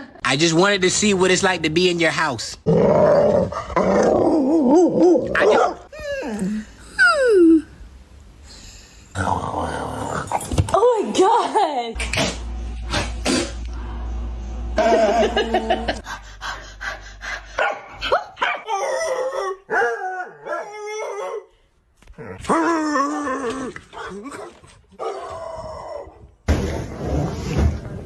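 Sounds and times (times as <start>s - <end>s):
dog barking: 5.4s - 5.8s, 17.6s - 18.8s.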